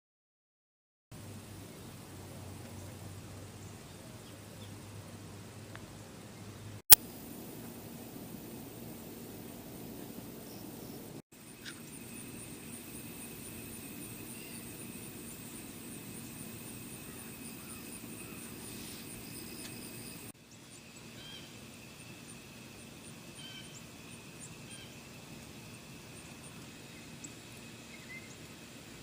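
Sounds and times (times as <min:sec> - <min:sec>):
steady hiss: 0:06.9 - 0:29.0.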